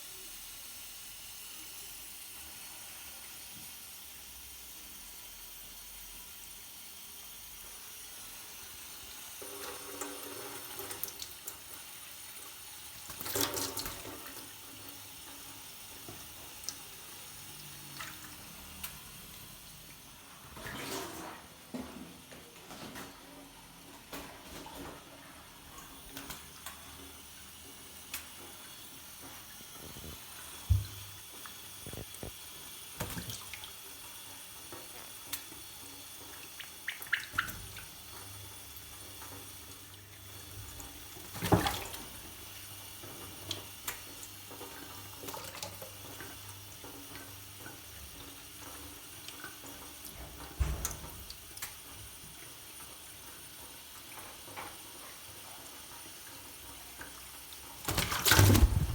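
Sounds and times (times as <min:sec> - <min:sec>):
tap water running into sink: 0:06.2 - 0:23.2, 0:24.2 - 0:58.9
water splashes: 0:57.8 - 0:58.9.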